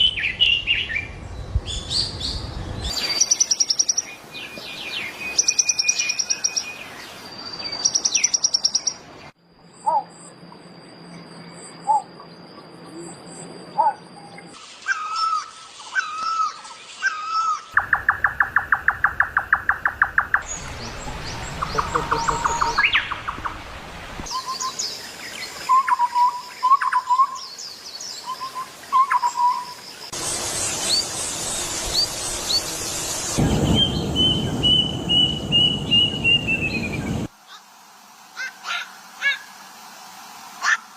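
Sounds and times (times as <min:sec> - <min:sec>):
birds calling and chirping: 0:00.0 - 0:37.3
fast run of repeated bird notes: 0:17.8 - 0:23.8
whistled bird notes: 0:20.4 - 0:23.6, 0:24.3 - 0:29.8, 0:30.4 - 0:37.3.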